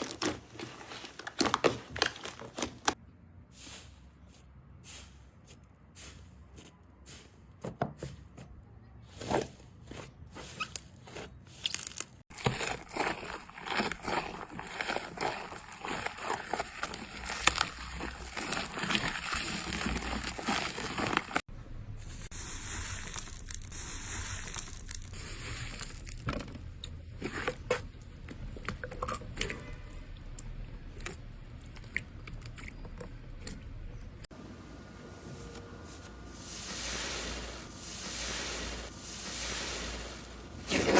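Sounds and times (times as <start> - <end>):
slime squishing and crackling: 10.4 - 21.5, 22.1 - 26.4, 27.2 - 33.8.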